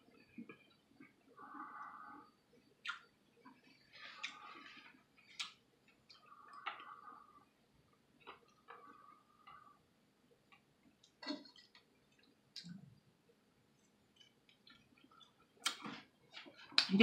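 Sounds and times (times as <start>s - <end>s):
person chewing and lip smacks: 2.8s - 6.9s, 14.1s - 16.9s.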